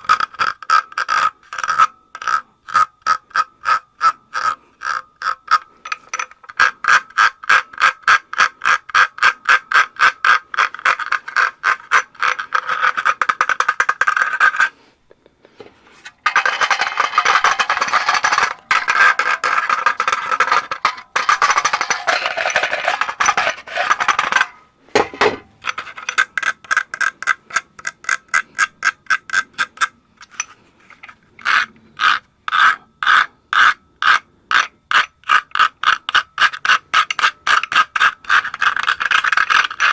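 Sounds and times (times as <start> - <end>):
metal rasping and scraping: 0.0 - 14.8, 15.6 - 39.9.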